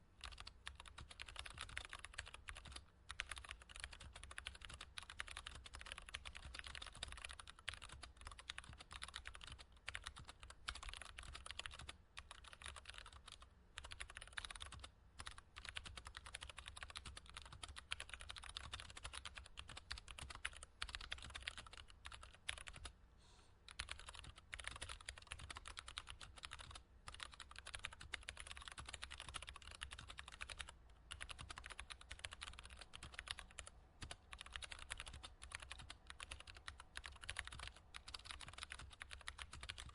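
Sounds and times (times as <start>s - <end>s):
keyboard typing: 0.2s - 22.9s, 23.7s - 39.9s.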